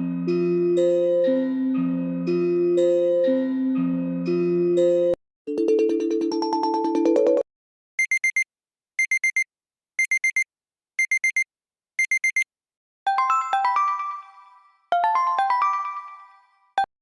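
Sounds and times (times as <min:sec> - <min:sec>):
digital alarm clock beeps: 0:08.0 - 0:08.4, 0:09.0 - 0:09.4, 0:10.0 - 0:10.4, 0:11.0 - 0:12.5.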